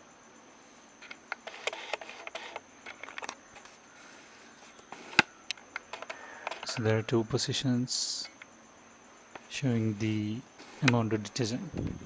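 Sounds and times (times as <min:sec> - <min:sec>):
plastic clicks and rattles: 0:01.0 - 0:03.8, 0:04.8 - 0:06.9.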